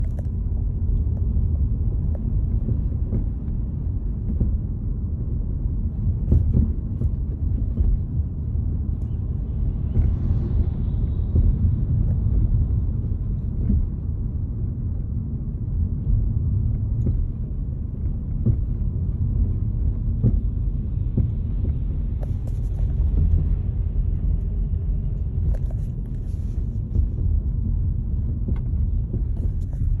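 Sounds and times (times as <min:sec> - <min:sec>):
car road rumble: 0:00.0 - 0:30.0
suspension knocks: 0:05.6 - 0:14.0, 0:16.9 - 0:24.2.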